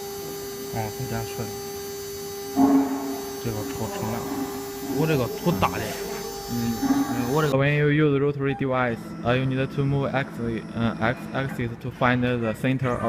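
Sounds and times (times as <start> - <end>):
cnc router humming: 0.0 - 7.7, 8.5 - 13.0.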